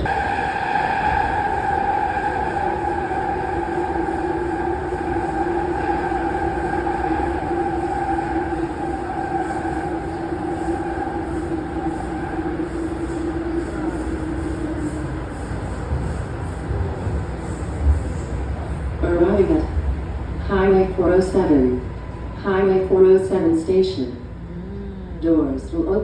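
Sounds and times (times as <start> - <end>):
high whining tone: 0.0 - 17.8
low whining tone: 0.0 - 18.0
subway train rumble: 0.0 - 26.0.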